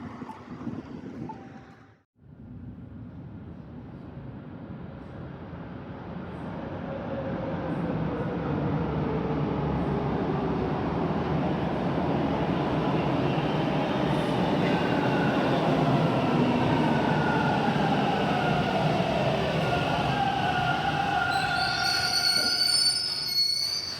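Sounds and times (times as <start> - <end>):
rail vehicle rumbling on track: 0.0 - 23.9.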